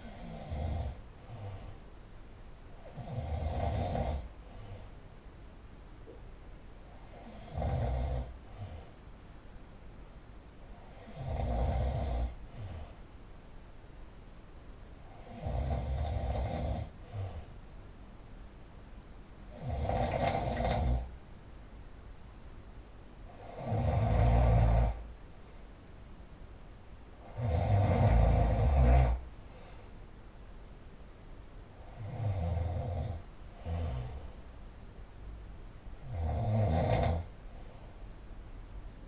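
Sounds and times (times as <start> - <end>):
person snoring loudly: 0.0 - 1.7, 2.8 - 4.3, 7.0 - 8.4, 10.8 - 12.8, 15.1 - 17.4, 19.5 - 21.1, 23.3 - 25.0, 27.2 - 29.2, 31.8 - 34.3, 36.0 - 37.3.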